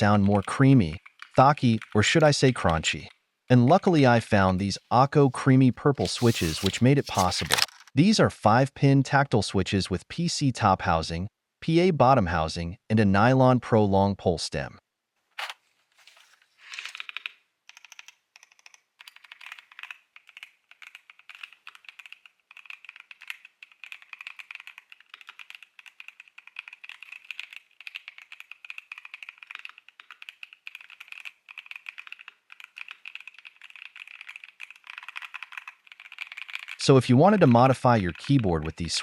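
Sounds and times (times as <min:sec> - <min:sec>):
mechanical keyboard typing: 0:00.0 - 0:03.2, 0:16.8 - 0:39.0.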